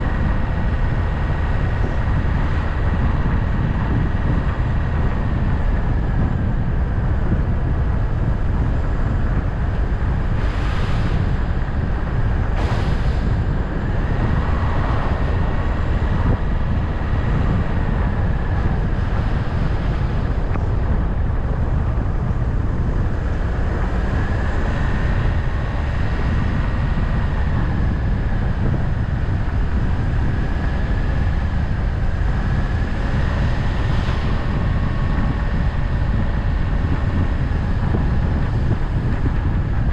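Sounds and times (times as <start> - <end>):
vehicle engine and tyres rumbling: 0.0 - 39.9
wind noise: 0.0 - 39.9.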